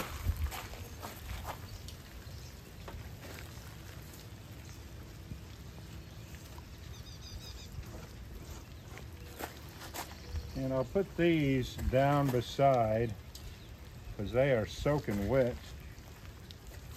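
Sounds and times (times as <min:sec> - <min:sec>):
rain pattering: 0:00.0 - 0:16.9
drips ticking: 0:10.6 - 0:16.9.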